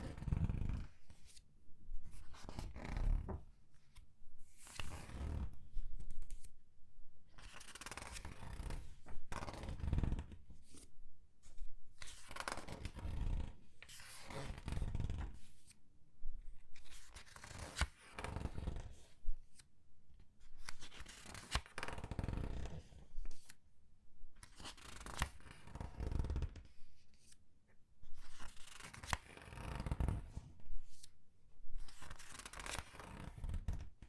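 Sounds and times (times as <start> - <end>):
paper pages turning: 7.4 - 8.9, 20.6 - 21.9, 24.4 - 25.6, 31.8 - 33.8.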